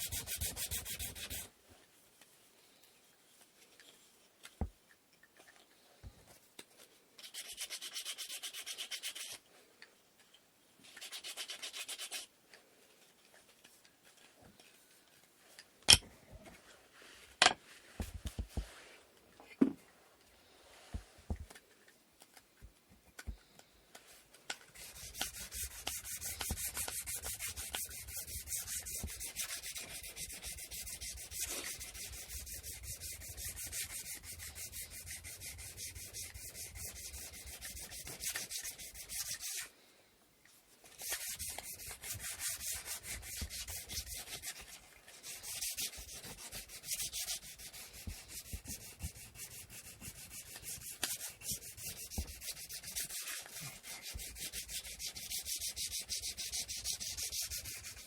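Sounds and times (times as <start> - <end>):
sandpaper rubbing on wood: 0.0 - 1.5, 24.8 - 39.7, 41.0 - 58.0.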